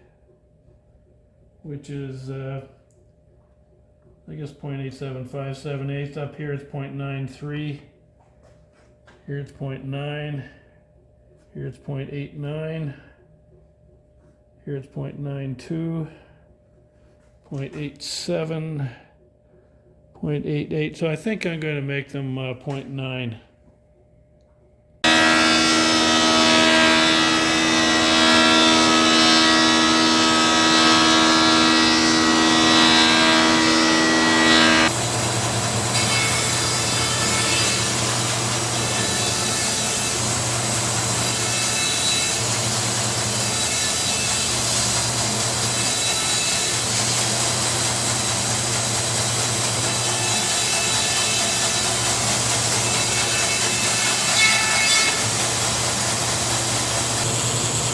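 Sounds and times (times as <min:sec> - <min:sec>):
motor hum: 0:25.0 - 0:54.0, 0:55.1 - 0:57.9
thickness planer cutting wood: 0:25.0 - 0:57.9.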